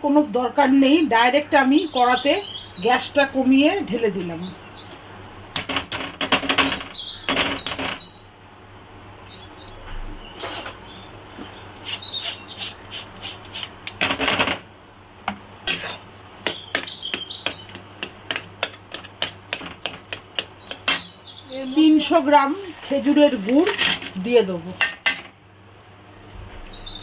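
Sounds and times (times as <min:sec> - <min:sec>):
spatula scraping a pan: 0:15.7 - 0:16.1, 0:22.0 - 0:24.2
spatula tapping on a pan: 0:16.4 - 0:21.1.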